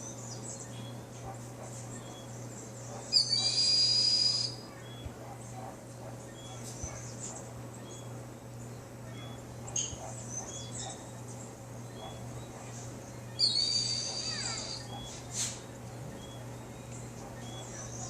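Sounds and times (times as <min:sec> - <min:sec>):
steady low hum: 0:00.0 - 0:18.0
shrill bird call: 0:03.1 - 0:05.1, 0:13.3 - 0:15.2.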